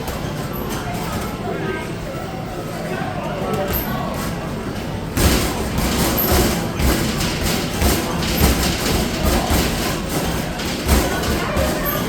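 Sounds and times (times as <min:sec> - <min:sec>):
basketballs thudding: 0:05.2 - 0:12.0.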